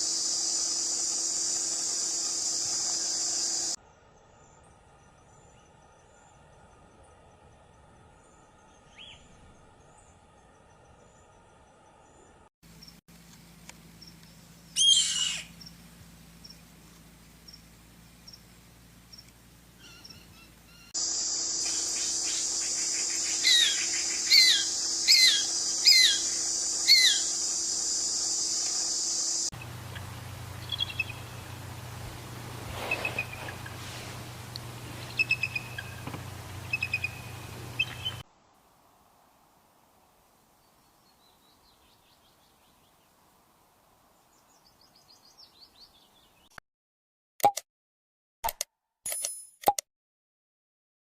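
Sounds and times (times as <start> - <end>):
steady high hiss: 0.0 - 4.4, 21.0 - 44.1
bird calls sliding down: 32.5 - 37.2.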